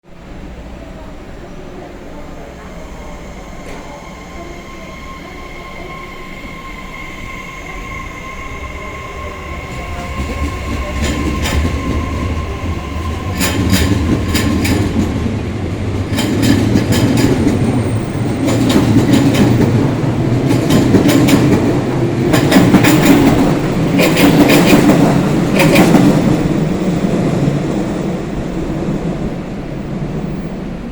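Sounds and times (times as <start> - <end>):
electric train passing: 0.2 - 30.9
wheels clacking over rail joints: 9.7 - 26.6.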